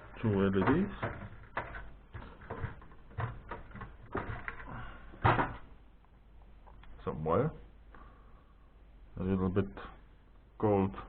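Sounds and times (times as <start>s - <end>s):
plastic and metal parts clicking: 0.0s - 5.6s.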